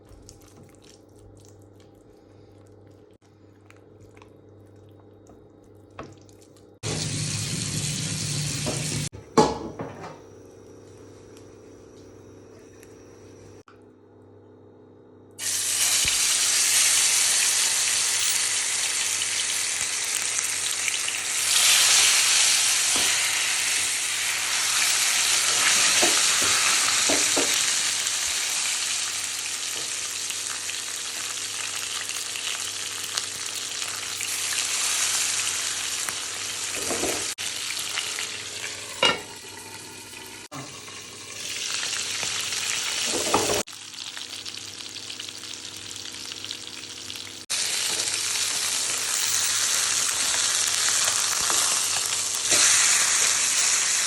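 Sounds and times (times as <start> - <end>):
fish sizzling in hot oil: 15.4 - 54.0.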